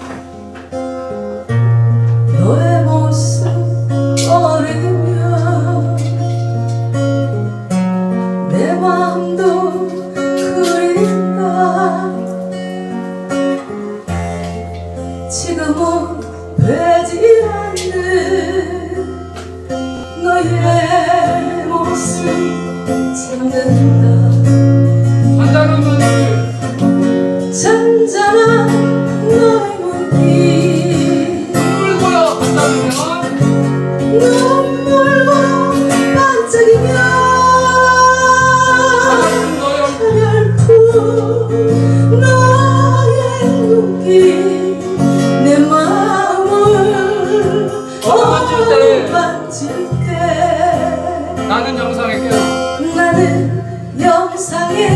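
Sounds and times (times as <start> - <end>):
guitar accompaniment: 0.0 - 54.9
person singing: 8.5 - 12.3, 20.2 - 24.6, 34.0 - 51.6.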